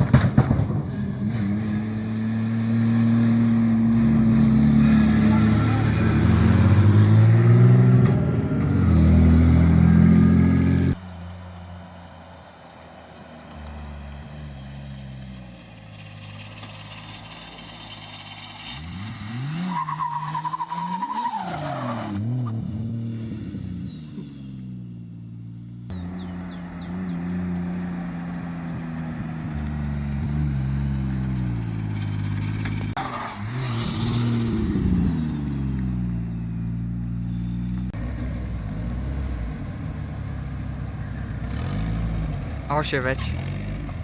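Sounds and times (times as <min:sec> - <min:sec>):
car engine revving: 0:00.4 - 0:11.7, 0:13.4 - 0:24.4, 0:25.2 - 0:44.0
tyre squeal: 0:19.6 - 0:22.2.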